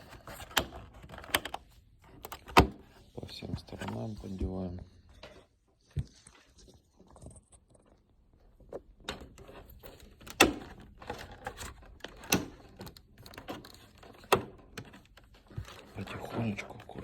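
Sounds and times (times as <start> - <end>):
plastic housing clicking and creaking: 0.0 - 2.9, 7.2 - 17.0
plastic scraping: 7.2 - 17.0.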